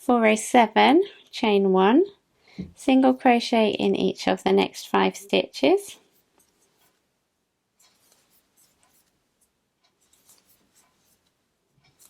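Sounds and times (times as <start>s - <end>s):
crochet hook rustling yarn: 5.9s - 7.1s, 7.8s - 12.0s.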